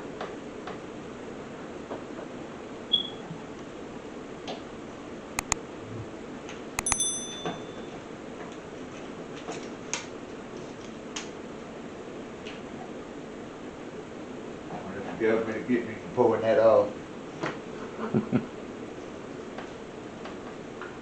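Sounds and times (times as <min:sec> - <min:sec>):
steady background hum: 0:00.0 - 0:21.0
metallic clink: 0:06.8 - 0:08.0.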